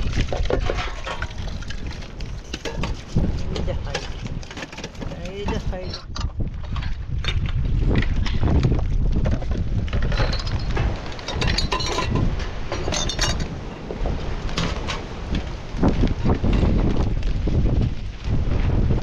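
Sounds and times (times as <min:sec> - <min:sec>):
clinks and knocks of handling: 0:00.0 - 0:06.3, 0:09.3 - 0:13.6
wind buffeting microphone: 0:00.0 - 0:19.0.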